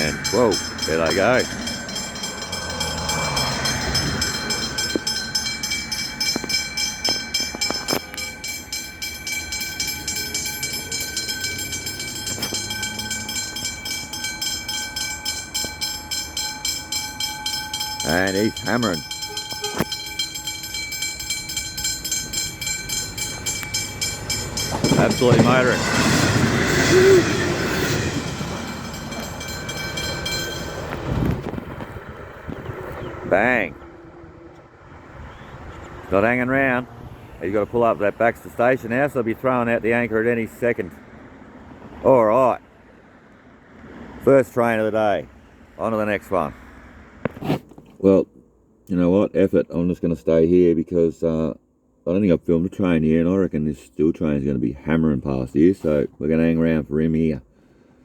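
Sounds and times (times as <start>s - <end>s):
wheels clicking over track: 0.0s - 33.3s
level crossing warning bells: 0.0s - 42.8s
diesel railcar passing: 0.0s - 47.3s.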